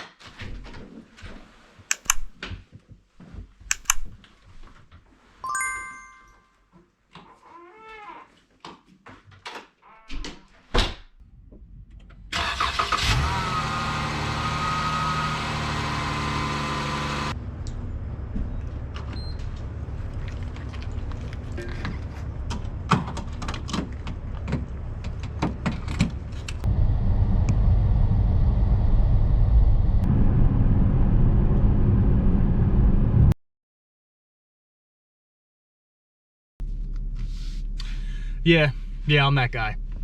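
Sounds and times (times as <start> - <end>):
clicks: 1.9 - 2.4, 3.7 - 4.2
car driving rumble: 17.0 - 33.4.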